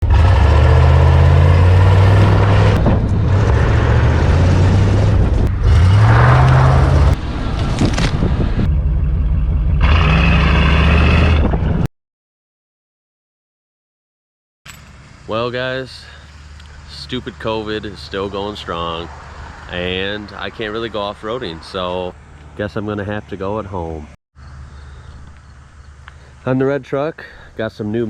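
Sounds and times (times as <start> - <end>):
truck engine revving: 0.0 - 11.9.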